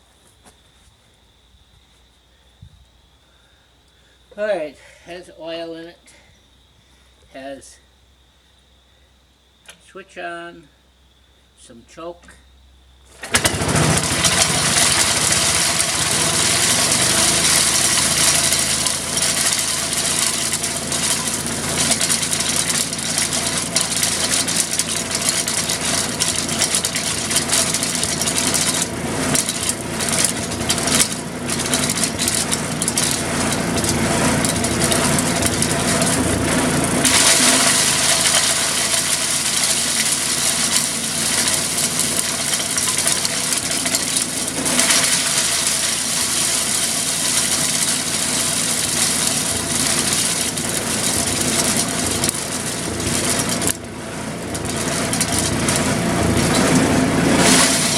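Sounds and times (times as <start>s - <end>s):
chipper engine running: 13.1s - 57.9s
harsh shredding noise: 13.3s - 57.9s
branches crackling and crunching: 14.1s - 57.9s.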